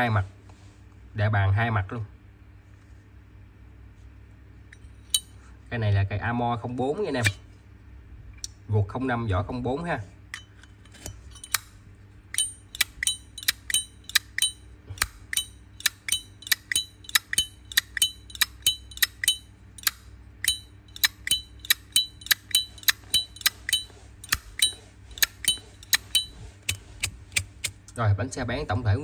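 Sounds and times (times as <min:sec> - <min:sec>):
lighter lid clicking open and shut: 0:12.4 - 0:27.8.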